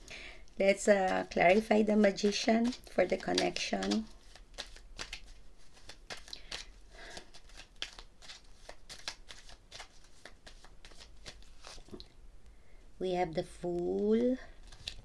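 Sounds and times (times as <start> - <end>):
cards being shuffled: 0.5 - 12.0, 14.5 - 15.0.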